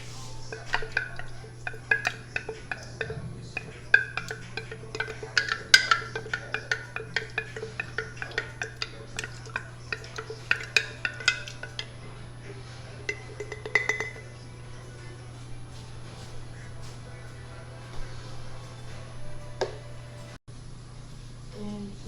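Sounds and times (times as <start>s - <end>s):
spoon clinking against pot: 0.0s - 17.2s.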